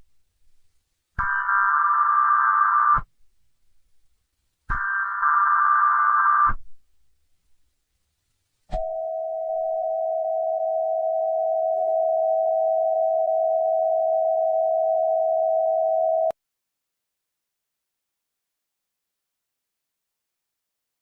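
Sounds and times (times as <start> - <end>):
steady electronic tone: 8.7 - 16.3.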